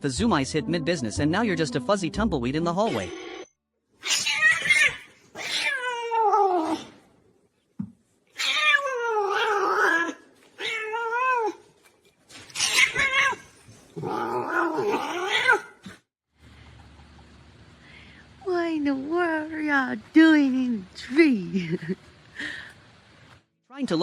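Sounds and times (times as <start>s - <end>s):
cat yowling: 4.0s - 6.9s, 8.4s - 11.6s, 12.6s - 15.8s.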